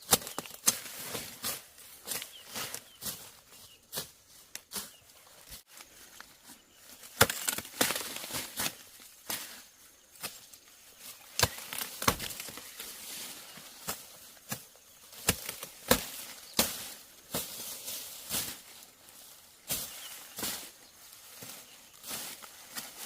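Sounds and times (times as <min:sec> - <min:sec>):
sharp knocks and crunches: 0:00.0 - 0:05.0, 0:06.9 - 0:09.6, 0:11.2 - 0:13.1, 0:13.7 - 0:18.8.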